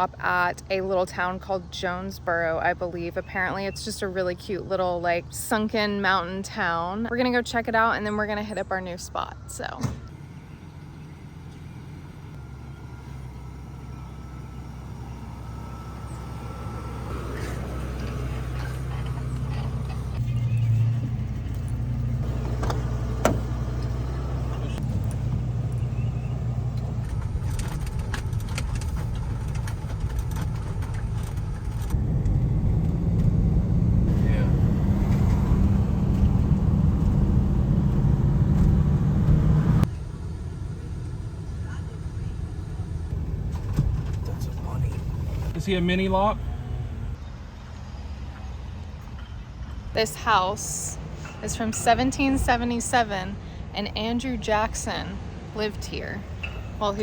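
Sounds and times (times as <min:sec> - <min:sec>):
bus engine and road noise: 0:00.0 - 0:57.0.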